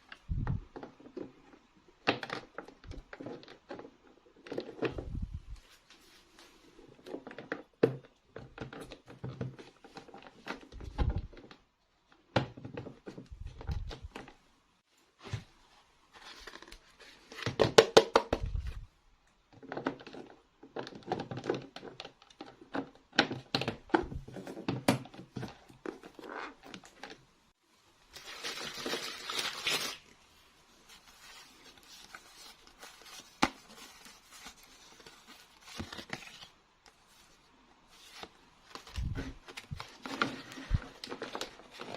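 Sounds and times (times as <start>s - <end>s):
packaging crinkling and tearing: 28.1s - 30.2s.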